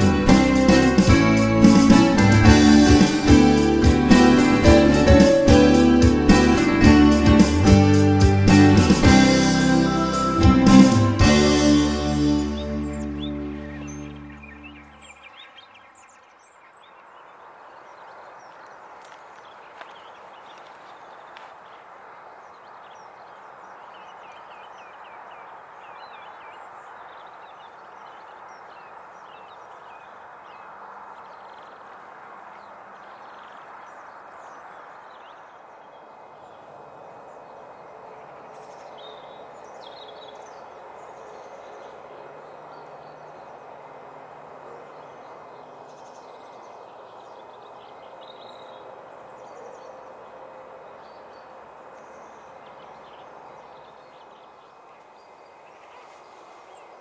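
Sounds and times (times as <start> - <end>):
small birds chirping: 0.0 - 31.9
outdoor background noise: 0.0 - 57.0.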